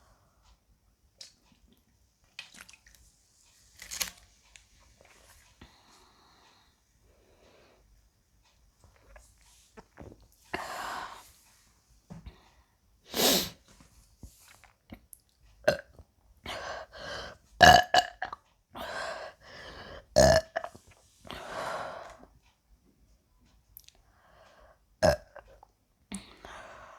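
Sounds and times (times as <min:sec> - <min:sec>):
woman burping: 0:17.6 - 0:18.4, 0:20.2 - 0:20.8.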